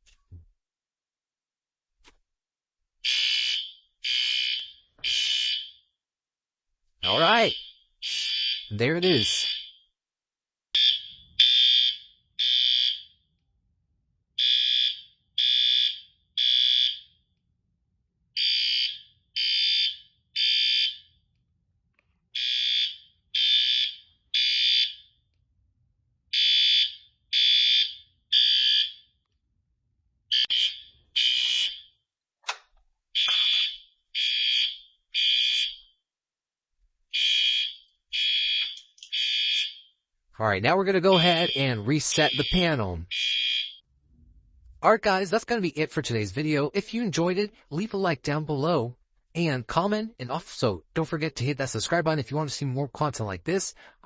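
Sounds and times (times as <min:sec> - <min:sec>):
fire alarm high-pitched blasts: 0:03.0 - 0:05.9, 0:07.0 - 0:09.9, 0:10.8 - 0:13.2, 0:14.4 - 0:17.2, 0:18.4 - 0:21.2, 0:22.4 - 0:25.2, 0:26.3 - 0:29.2, 0:30.3 - 0:32.0, 0:33.2 - 0:35.8, 0:37.1 - 0:40.0, 0:41.0 - 0:43.8.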